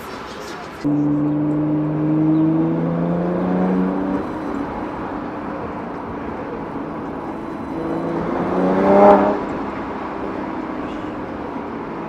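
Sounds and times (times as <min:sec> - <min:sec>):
car engine exhaust note: 0:00.8 - 0:12.0
road and wind rush: 0:00.8 - 0:12.0.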